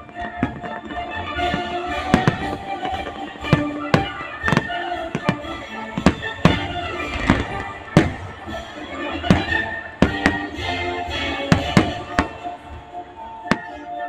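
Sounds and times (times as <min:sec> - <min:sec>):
music playing: 0:00.0 - 0:14.0
fireworks bangs: 0:02.0 - 0:10.6, 0:11.5 - 0:12.4.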